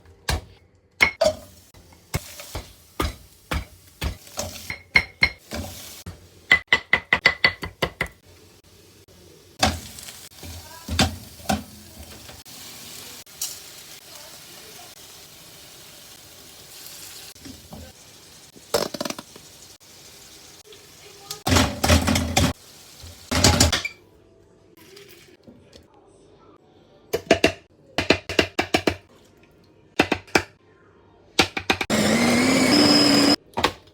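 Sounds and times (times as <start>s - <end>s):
kitchen clattering: 0.3s - 8.2s, 9.6s - 12.4s, 21.4s - 24.0s
metal utensils clinking on pan: 1.0s - 1.6s, 23.3s - 24.0s
food sizzling: 1.2s - 6.6s, 7.8s - 23.7s.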